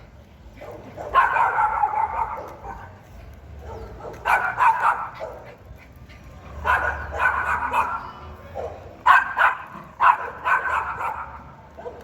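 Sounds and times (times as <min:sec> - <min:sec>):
dog barking angrily: 0:00.6 - 0:02.8, 0:03.7 - 0:05.4, 0:06.6 - 0:08.0, 0:08.6 - 0:12.0.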